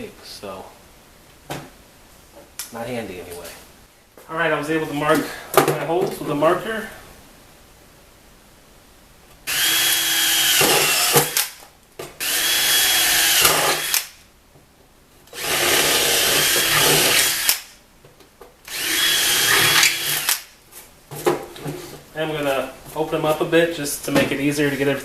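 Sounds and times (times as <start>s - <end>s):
power drill whining: 9.5s - 11.6s, 12.2s - 14.1s, 15.3s - 17.7s, 18.7s - 20.5s.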